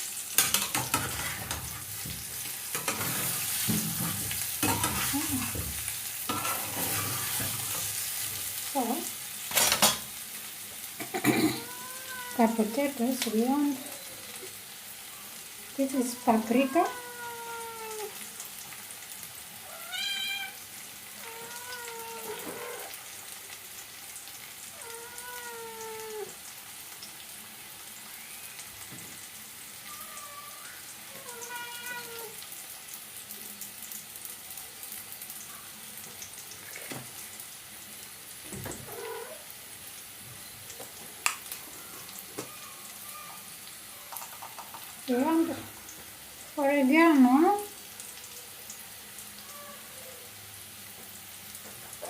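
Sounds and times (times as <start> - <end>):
food sizzling in a pan: 0.0 - 52.0
cat meowing: 11.4 - 12.8, 16.0 - 18.2, 19.6 - 23.0, 24.7 - 26.4, 29.8 - 32.4, 38.8 - 39.5, 41.8 - 43.5, 49.4 - 50.3.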